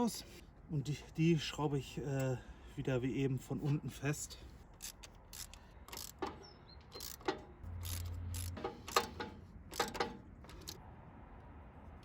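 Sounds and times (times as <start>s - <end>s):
hand tools clicking on metal: 4.8s - 10.8s.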